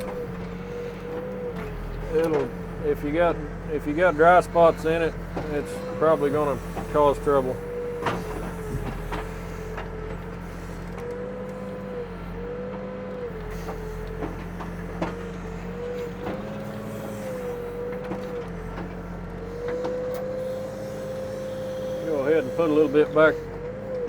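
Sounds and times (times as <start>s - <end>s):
diesel engine running: 0.0s - 24.0s
hydraulic whine: 0.0s - 24.0s.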